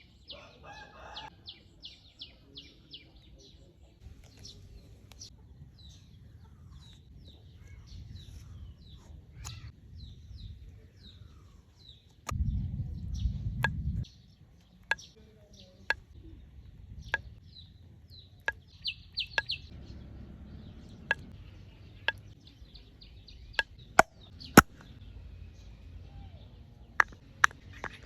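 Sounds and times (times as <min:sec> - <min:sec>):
small birds chirping: 0:00.0 - 0:28.0.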